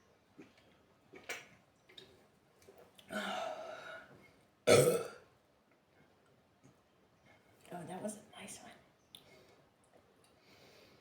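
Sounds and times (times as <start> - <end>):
woman burping: 4.7 - 5.2.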